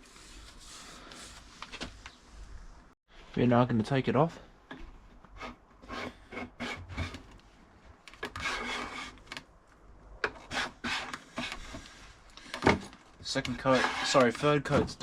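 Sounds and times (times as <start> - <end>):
scraping wooden surface by hand: 13.4 - 14.5.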